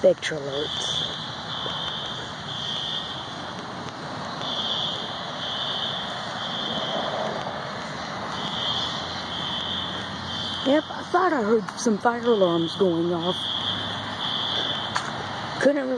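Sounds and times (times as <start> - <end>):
fire alarm horn beeps: 0.4 - 3.3, 4.4 - 7.1, 8.3 - 11.0, 12.1 - 15.0.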